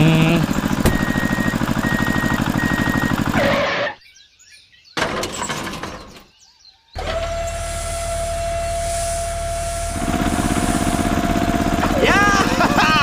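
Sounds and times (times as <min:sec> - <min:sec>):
small engine chugging: 0:00.0 - 0:03.7, 0:07.0 - 0:13.0.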